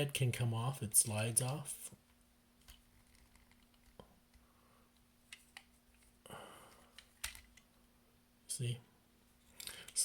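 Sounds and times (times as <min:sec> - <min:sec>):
low steady hum: 0:00.0 - 0:10.0
plastic toy parts clicking: 0:06.9 - 0:07.7.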